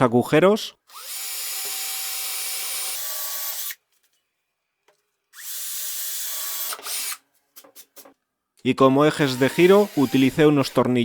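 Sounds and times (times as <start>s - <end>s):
power drill boring into plywood: 0.9s - 3.8s, 8.9s - 10.9s.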